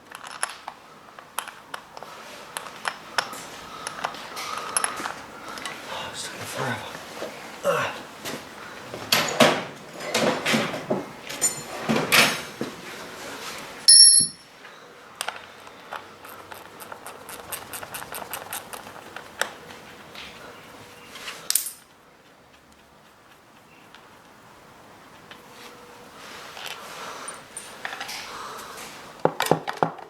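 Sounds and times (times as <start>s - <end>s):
loud ringing metallic clank: 13.9s - 14.4s.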